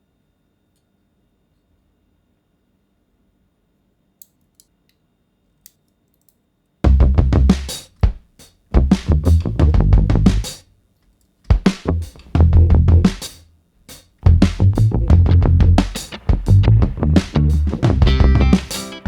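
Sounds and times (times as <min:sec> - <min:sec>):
drum-heavy music: 0:06.9 - 0:10.6, 0:11.5 - 0:19.0.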